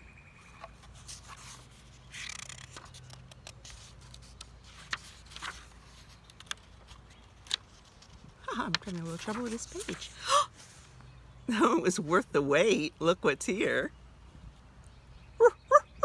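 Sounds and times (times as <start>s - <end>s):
book pages rustling and turning: 0.4s - 10.9s.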